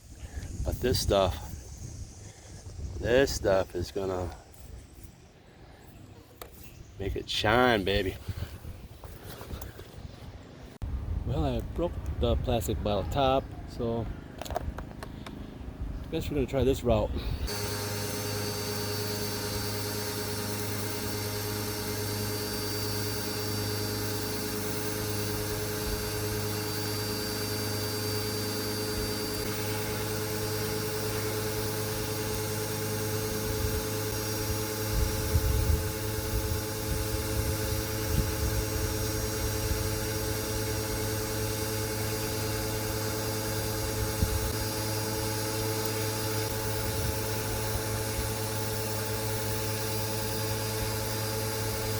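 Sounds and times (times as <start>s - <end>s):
pressure washer running: 14.3s - 51.9s.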